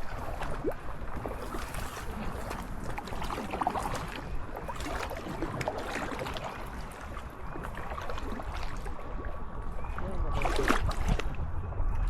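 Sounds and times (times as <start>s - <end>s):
paddle dips and splashes: 0.0s - 12.0s
steady low rumble: 8.8s - 12.0s.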